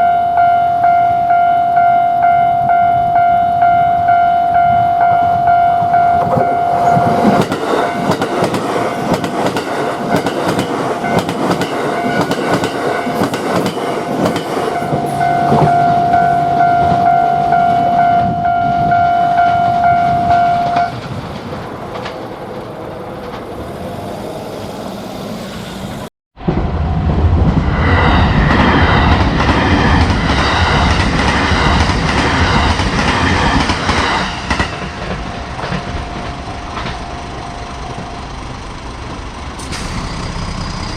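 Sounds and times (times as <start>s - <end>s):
high warning tone: 0.0s - 21.0s, 31.7s - 40.9s
train wheels clicking over rails: 6.2s - 17.1s, 19.4s - 26.1s, 27.1s - 40.9s.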